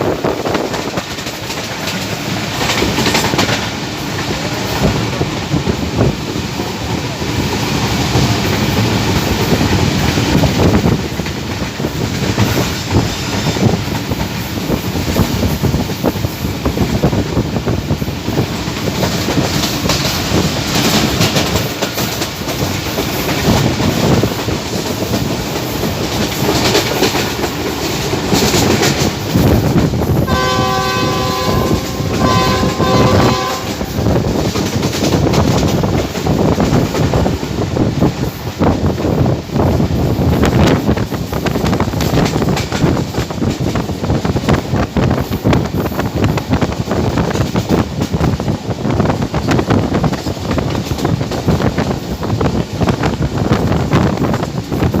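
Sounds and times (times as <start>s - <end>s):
train wheels clattering on rails: 0.0s - 55.0s
locomotive horn blasts: 30.3s - 34.0s.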